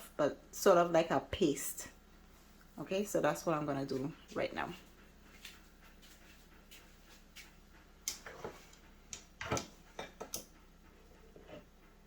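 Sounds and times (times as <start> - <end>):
utensil scraping bowl: 8.1 - 8.8, 9.4 - 11.8.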